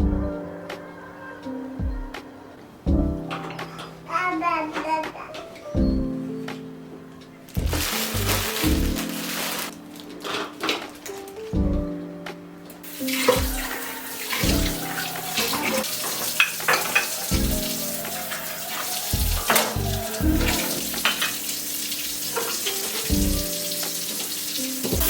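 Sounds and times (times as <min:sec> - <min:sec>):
background music: 0:00.0 - 0:25.0
tap water running into sink: 0:12.9 - 0:25.0.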